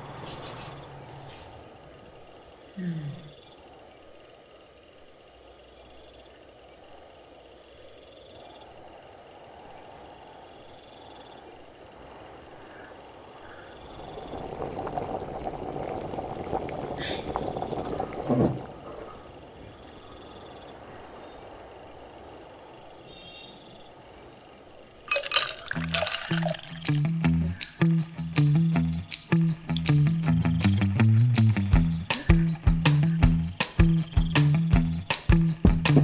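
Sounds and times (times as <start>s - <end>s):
night insects chirping: 0.0s - 36.0s
rushing pouring sound: 13.9s - 18.8s, 25.1s - 26.9s.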